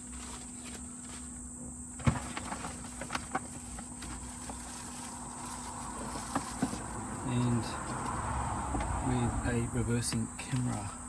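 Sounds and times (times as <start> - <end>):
knocks and clicks of handling: 2.0 - 7.2.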